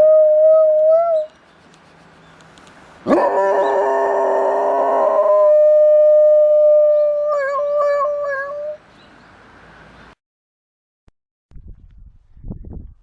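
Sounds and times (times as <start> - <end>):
dog howling: 3.1 - 8.8.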